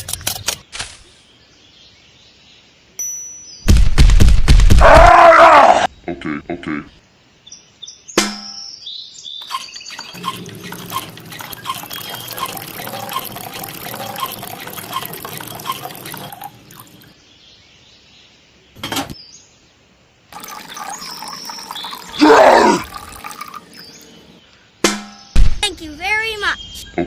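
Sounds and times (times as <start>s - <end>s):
water gushing from hand pump: 9.4s - 17.1s, 20.4s - 23.9s.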